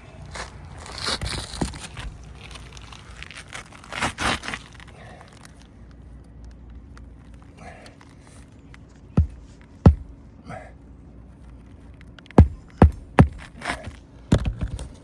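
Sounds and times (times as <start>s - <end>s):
scraping on asphalt roof shingles: 0.2s - 5.5s, 9.1s - 10.2s, 12.3s - 15.0s
sharp knock: 9.2s - 10.1s, 12.4s - 13.5s.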